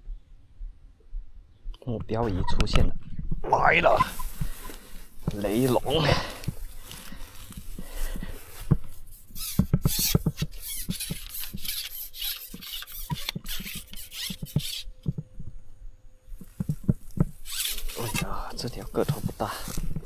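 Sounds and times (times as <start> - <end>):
rustling: 3.8 - 15.5, 16.3 - 20.0.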